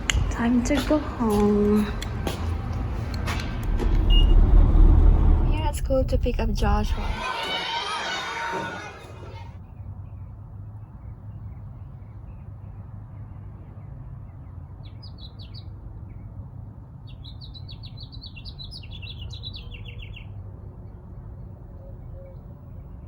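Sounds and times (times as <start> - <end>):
steady low rumble: 0.0 - 7.5
songbird singing: 14.8 - 16.3, 17.0 - 20.4.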